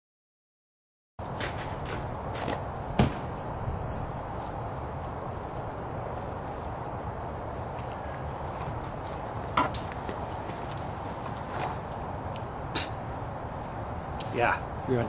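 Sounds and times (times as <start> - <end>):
steady background noise: 1.2 - 15.0
sharp knocks or steps: 1.4 - 3.3.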